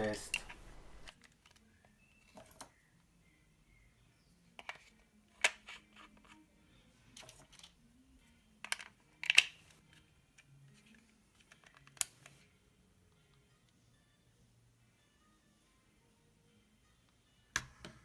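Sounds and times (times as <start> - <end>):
plastic clicks and snaps: 8.6 - 9.6.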